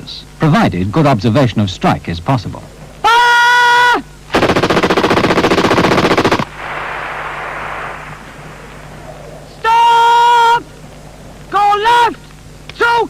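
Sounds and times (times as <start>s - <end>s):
machine gun burst: 4.3s - 8.3s
gunfire echo rolling: 4.3s - 9.6s.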